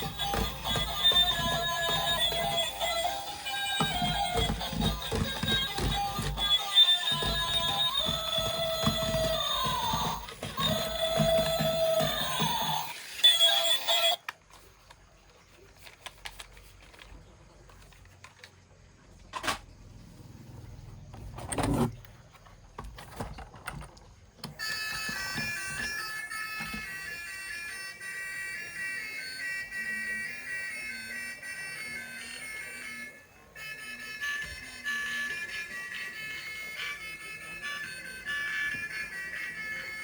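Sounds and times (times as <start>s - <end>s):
scattered clicks and knocks: 0.0s - 13.0s, 22.8s - 27.0s.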